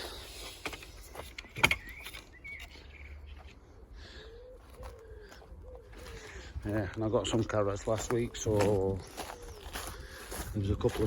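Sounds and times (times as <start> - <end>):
pigeon cooing: 3.6 - 6.9.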